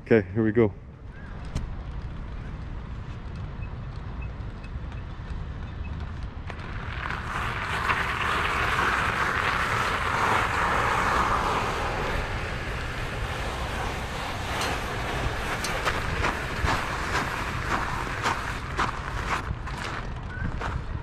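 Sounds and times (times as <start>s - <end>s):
wind rumble on microphone: 0.0s - 21.0s
loud rushing noise: 6.4s - 20.2s.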